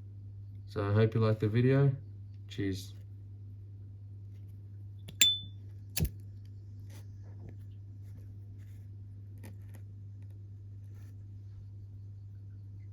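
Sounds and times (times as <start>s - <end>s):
lighter lid flicked open: 5.1s - 5.4s.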